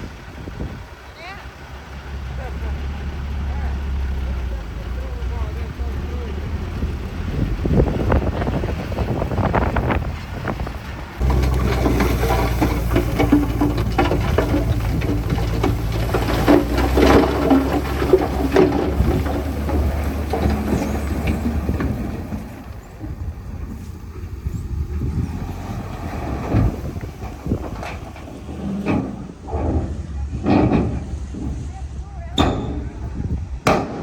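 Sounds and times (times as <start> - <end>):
diesel construction machine running: 0.0 - 34.0
metal clanks and knocks: 11.2 - 23.8, 26.2 - 34.0.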